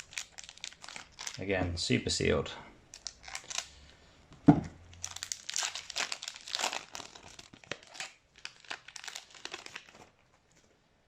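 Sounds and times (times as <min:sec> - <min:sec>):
wrapper crinkling and tearing: 0:00.0 - 0:01.5, 0:02.9 - 0:03.9, 0:04.9 - 0:10.7.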